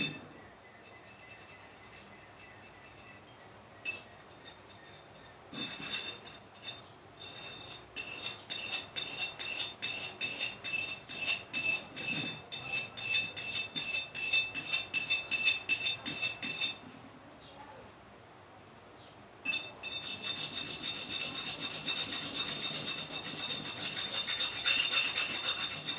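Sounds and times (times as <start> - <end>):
hand tool scraping rusty metal: 0.0 - 0.3, 0.9 - 16.8, 19.5 - 25.9
metal ringing: 0.0 - 9.7, 19.4 - 21.2.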